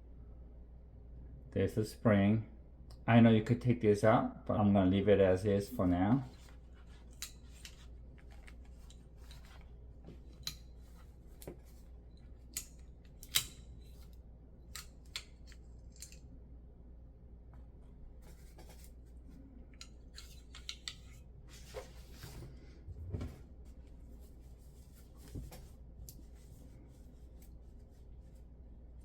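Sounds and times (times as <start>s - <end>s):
metal pistol parts clicking: 10.3s - 10.8s, 12.1s - 16.3s, 19.8s - 21.2s.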